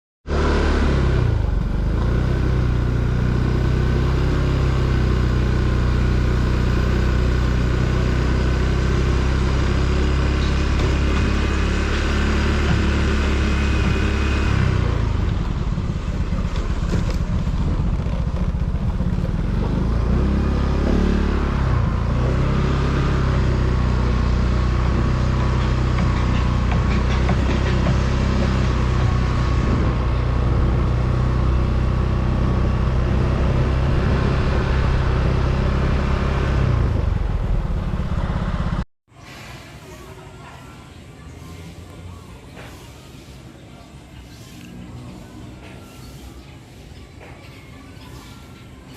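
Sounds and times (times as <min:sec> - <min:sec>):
motor vehicle engine running: 0:00.2 - 0:38.9.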